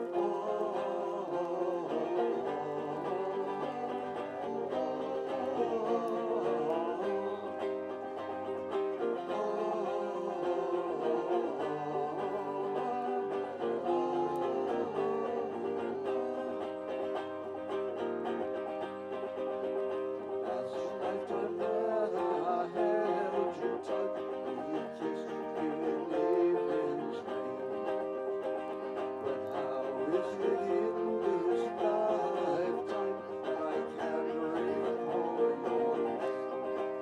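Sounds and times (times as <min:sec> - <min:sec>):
plucked string instruments: 0:00.0 - 0:37.0.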